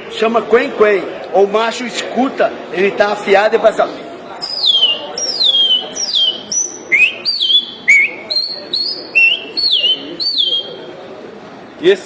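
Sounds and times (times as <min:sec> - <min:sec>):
man whistling bird song: 0:04.4 - 0:10.8.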